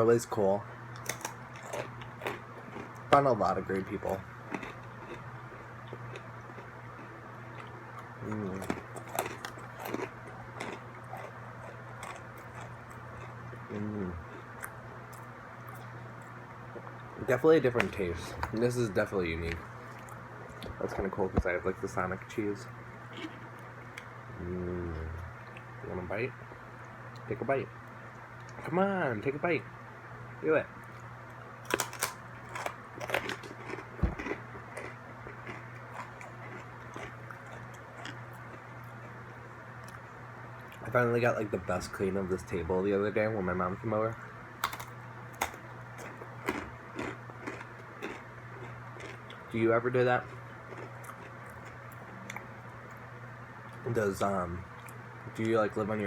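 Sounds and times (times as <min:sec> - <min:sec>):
low electrical hum: 0:00.0 - 0:56.0
crunchy chewing: 0:00.9 - 0:17.1, 0:22.4 - 0:25.8, 0:30.8 - 0:40.9, 0:44.6 - 0:54.0
person humming: 0:24.3 - 0:25.2.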